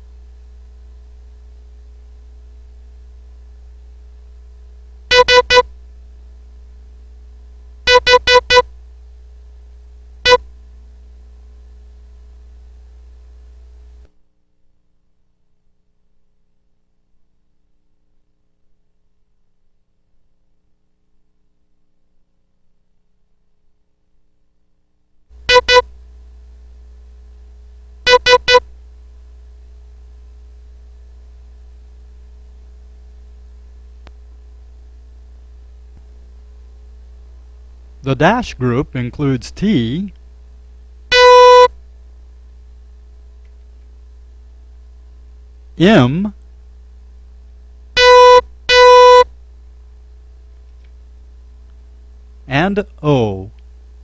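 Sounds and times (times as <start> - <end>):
low steady hum: 0.0 - 54.0
morse code beeps: 5.1 - 5.6, 7.9 - 8.6, 25.5 - 25.8, 28.1 - 28.6, 41.1 - 41.7, 48.0 - 49.2.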